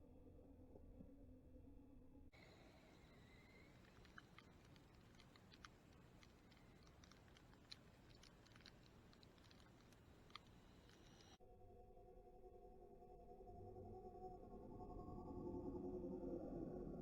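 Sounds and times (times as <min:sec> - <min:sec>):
faint steady hum: 0:00.0 - 0:17.0
faint irregular clicks: 0:02.4 - 0:11.4.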